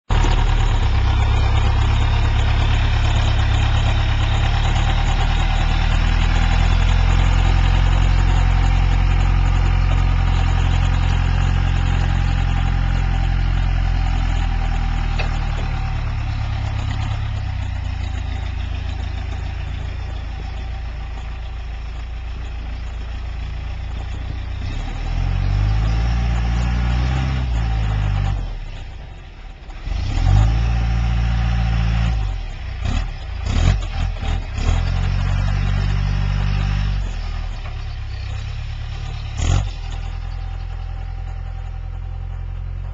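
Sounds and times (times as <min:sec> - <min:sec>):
engine revving: 0:00.1 - 0:18.2, 0:24.6 - 0:28.7, 0:29.8 - 0:41.3
diesel engine droning: 0:00.1 - 0:42.9.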